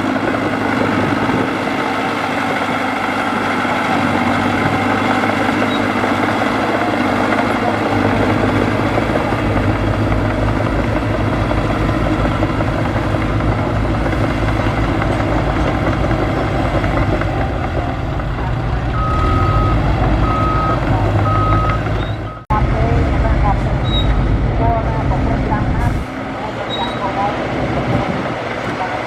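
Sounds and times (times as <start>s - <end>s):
heavy diesel engine running: 0.0s - 29.0s
reversing alarm beeps: 19.0s - 22.4s.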